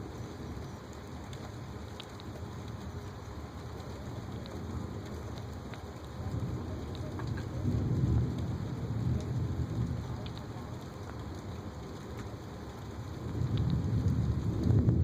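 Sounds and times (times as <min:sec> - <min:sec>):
rain falling: 0:00.0 - 0:15.0
raindrops ticking: 0:00.0 - 0:15.0
low rumble of thunder: 0:03.8 - 0:15.0.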